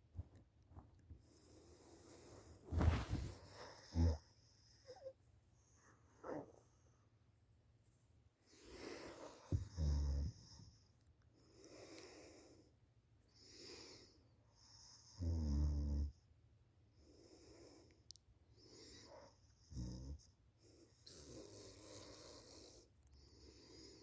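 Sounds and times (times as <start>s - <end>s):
soft breaths: 1.1s - 7.5s, 8.3s - 15.0s, 16.9s - 24.0s.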